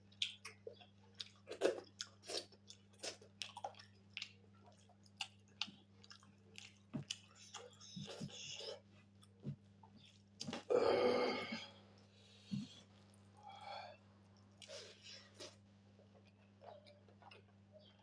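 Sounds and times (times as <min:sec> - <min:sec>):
chewing with wet clicks and smacks: 0:00.0 - 0:10.6, 0:14.2 - 0:18.0.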